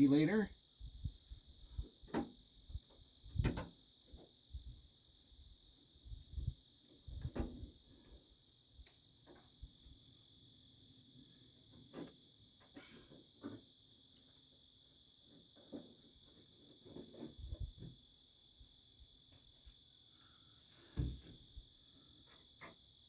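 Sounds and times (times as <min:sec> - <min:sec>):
crickets chirping: 0:00.0 - 0:23.0
knocks on truck door: 0:21.0 - 0:21.3.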